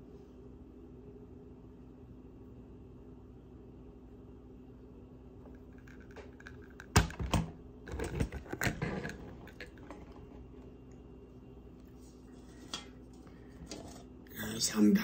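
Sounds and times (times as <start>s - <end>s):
low steady hum: 0.0s - 15.0s
small items clicking on hard surface: 5.5s - 10.4s.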